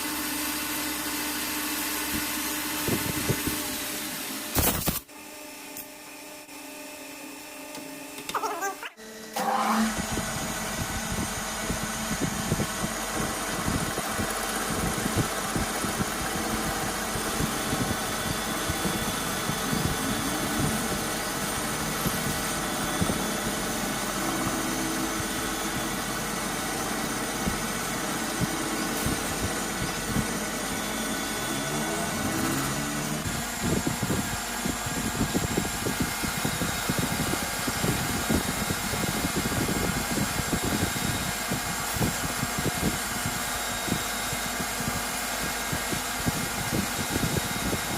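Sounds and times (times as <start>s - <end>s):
metal lathe machining with rattle: 10.0s - 33.6s.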